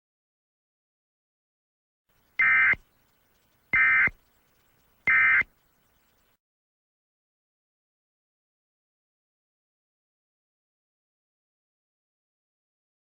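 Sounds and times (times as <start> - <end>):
buzzy digital data bursts: 2.4 - 2.8, 3.7 - 4.2, 5.1 - 5.5.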